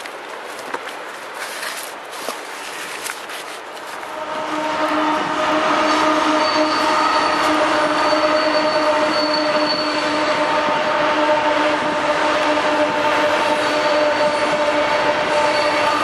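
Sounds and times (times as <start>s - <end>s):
train cars rolling over rails: 0.1s - 16.0s
squealing train wheels: 4.0s - 16.0s.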